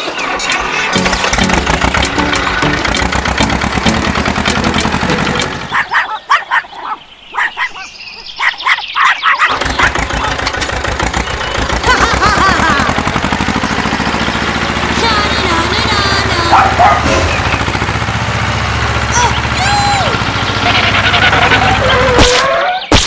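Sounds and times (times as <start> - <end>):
vehicle engine running: 0.0 - 6.0, 9.5 - 22.2
bird-like chirps: 5.3 - 10.2.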